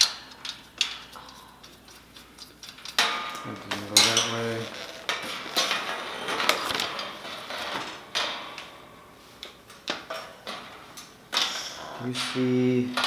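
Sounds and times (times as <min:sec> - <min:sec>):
metal cage parts clanking: 0:00.0 - 0:01.2, 0:02.6 - 0:08.9
metal scraping: 0:01.8 - 0:08.7.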